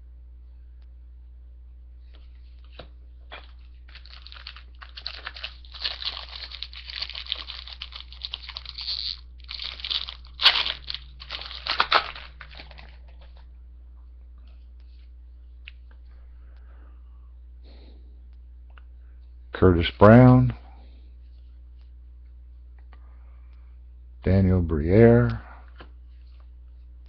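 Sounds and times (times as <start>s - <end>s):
wrapper crackling and crinkling: 3.4s - 13.4s.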